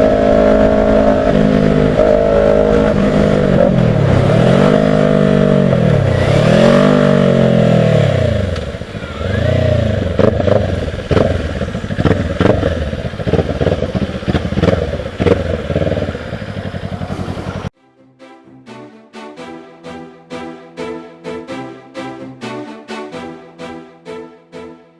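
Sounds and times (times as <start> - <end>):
motorcycle engine revving: 0.0 - 17.7
instrumental music with struck notes: 17.8 - 24.9.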